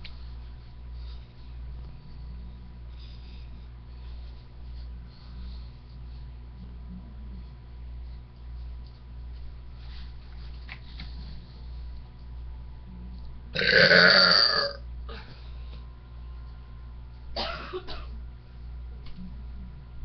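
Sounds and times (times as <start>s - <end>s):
woman belching: 13.6s - 14.8s.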